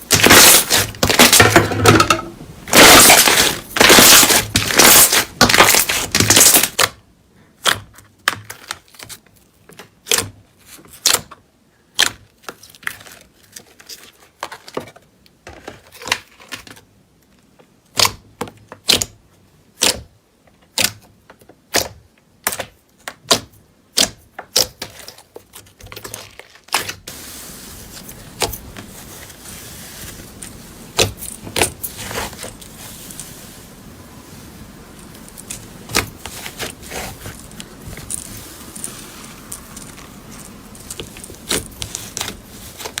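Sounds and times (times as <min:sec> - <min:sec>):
steady hiss: 0:27.1 - 0:43.0.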